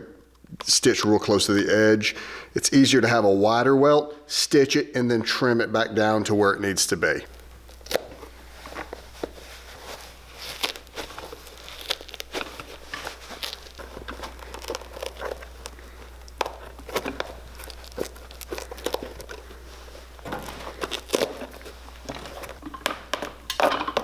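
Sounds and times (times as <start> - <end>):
tools clicking and scraping leather: 7.3 - 24.0.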